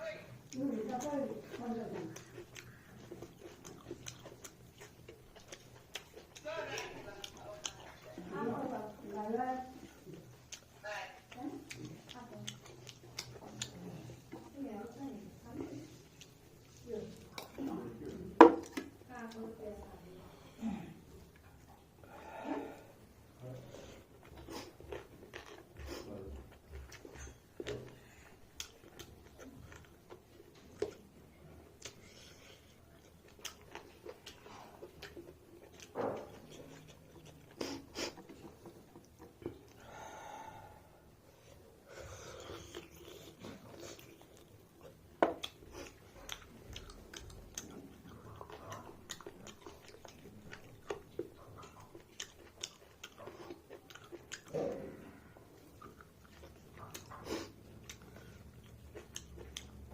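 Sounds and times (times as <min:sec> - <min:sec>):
person chewing food: 0:00.1 - 0:59.9.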